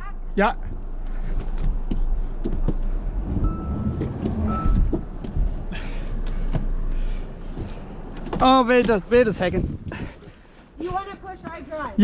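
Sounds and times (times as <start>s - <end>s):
car engine under throttle: 2.1s - 8.4s.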